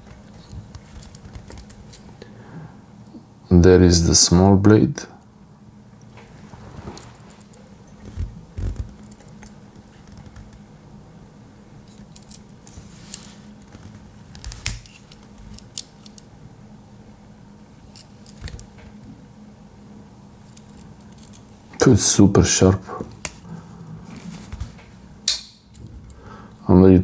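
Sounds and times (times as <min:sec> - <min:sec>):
faint low hum: 0:18.3 - 0:27.0.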